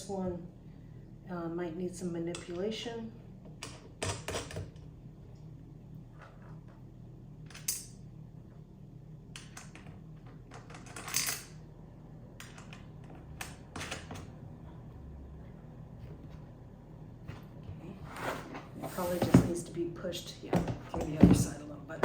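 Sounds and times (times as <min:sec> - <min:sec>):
metal hardware clinking: 0:07.5 - 0:08.0.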